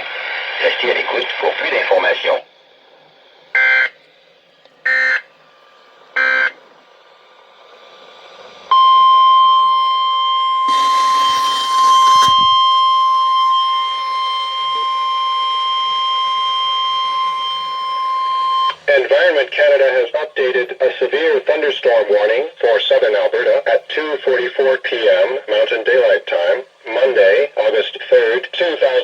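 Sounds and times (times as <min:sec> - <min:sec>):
steady warning alarm tone: 0:03.6 - 0:04.0, 0:04.8 - 0:05.3, 0:06.2 - 0:06.6, 0:08.7 - 0:20.6
static hiss: 0:10.7 - 0:12.8.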